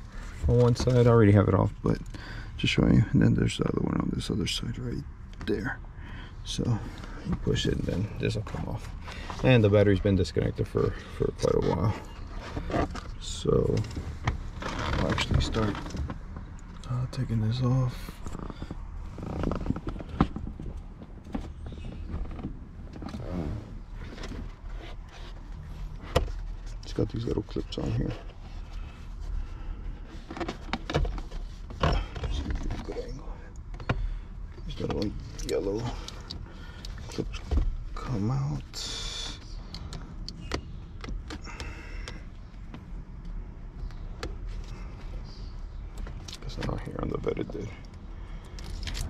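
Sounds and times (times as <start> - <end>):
plastic creaking: 13.8 - 16.6, 18.1 - 24.7.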